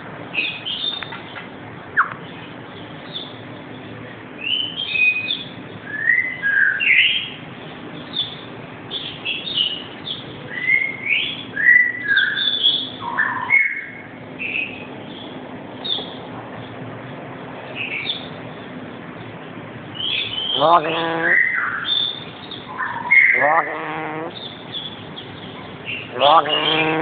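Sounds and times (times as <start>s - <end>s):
bird whistles and chirps: 10.5s - 13.9s.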